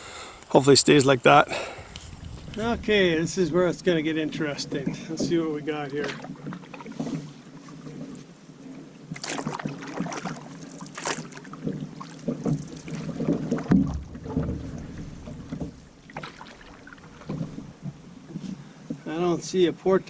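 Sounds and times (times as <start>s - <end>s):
paddle splashes: 0.0s - 19.2s
low rumble: 2.1s - 5.3s
paddle knocking against hull: 4.3s - 19.1s.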